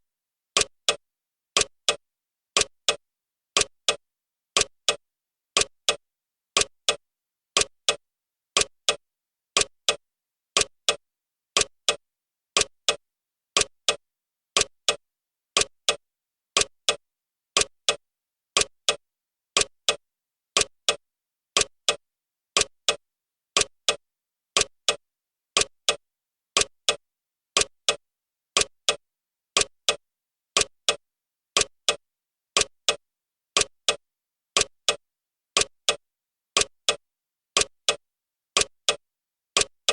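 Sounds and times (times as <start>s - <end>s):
clock ticking: 0.6s - 1.0s, 1.6s - 2.0s, 2.6s - 3.0s, 3.6s - 4.0s, 4.6s - 5.0s, 5.6s - 6.0s, 6.6s - 7.0s, 7.6s - 8.0s, 8.6s - 9.0s, 9.6s - 10.0s, 10.6s - 11.0s, 11.6s - 12.0s, 12.6s - 13.0s, 13.6s - 14.0s, 14.6s - 15.0s, 15.6s - 16.0s, 16.6s - 17.0s, 17.6s - 18.0s, 18.6s - 19.0s, 19.6s - 20.0s, 20.6s - 21.0s, 21.6s - 22.0s, 22.6s - 23.0s, 23.6s - 24.0s, 24.6s - 25.0s, 25.6s - 26.0s, 26.6s - 27.0s, 27.6s - 28.0s, 28.6s - 29.0s, 29.6s - 30.0s, 30.6s - 31.0s, 31.6s - 32.0s, 32.6s - 33.0s, 33.6s - 34.0s, 34.6s - 35.0s, 35.6s - 36.0s, 36.6s - 37.0s, 37.6s - 38.0s, 38.6s - 39.0s, 39.6s - 39.9s.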